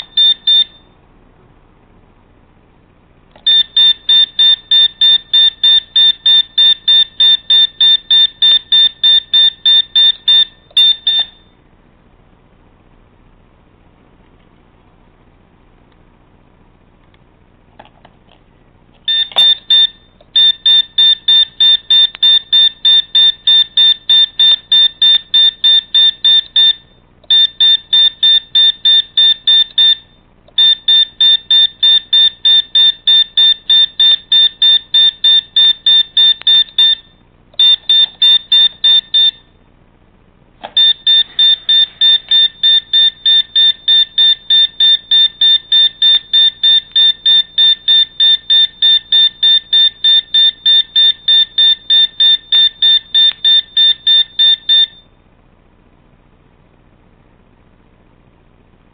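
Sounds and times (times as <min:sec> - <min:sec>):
electronic buzzer beeping: 0:40.8 - 0:55.0.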